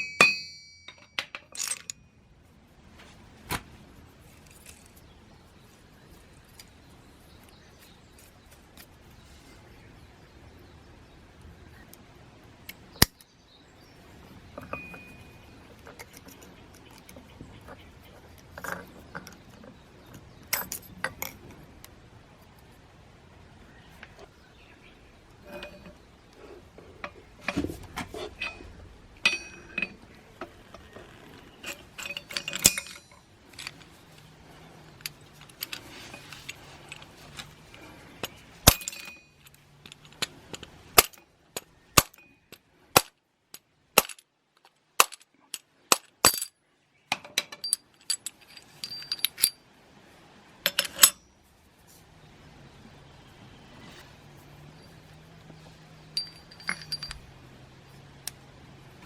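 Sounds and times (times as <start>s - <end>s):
metal parts and tools clinking: 0.0s - 2.2s, 14.4s - 21.6s, 25.4s - 49.7s, 50.6s - 51.3s, 53.8s - 59.0s.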